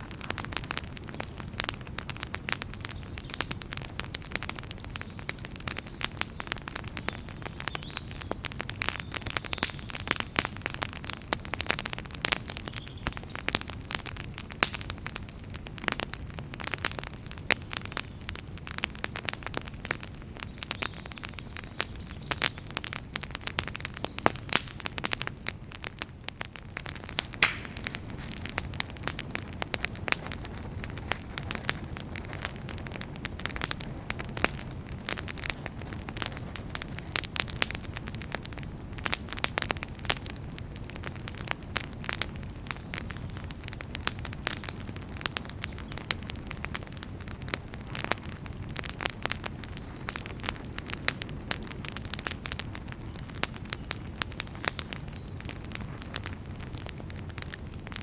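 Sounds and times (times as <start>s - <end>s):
wood fire crackling: 0.0s - 58.0s
flame rushing: 26.5s - 37.7s.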